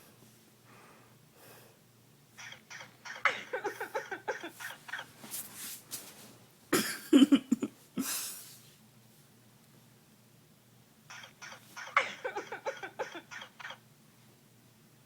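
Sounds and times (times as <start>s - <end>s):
bird raspy cough-like calls: 2.4s - 5.1s, 11.1s - 13.8s.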